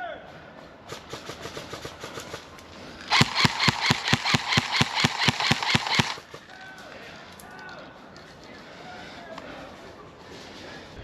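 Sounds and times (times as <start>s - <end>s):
airsoft gun shots: 3.1s - 6.3s.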